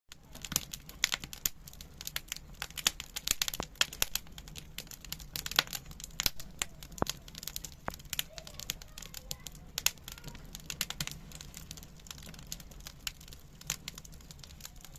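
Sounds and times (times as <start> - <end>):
wood fire crackling: 0.1 - 14.9.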